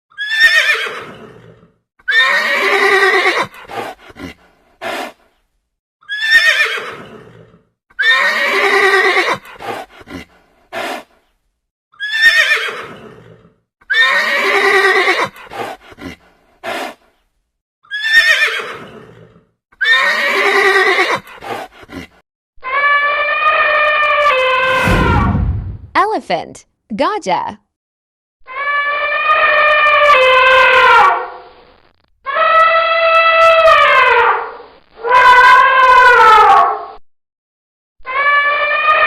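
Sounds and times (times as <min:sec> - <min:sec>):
horse whinnying: 0:00.1 - 0:03.6, 0:06.0 - 0:10.3, 0:12.0 - 0:16.2, 0:17.8 - 0:25.0.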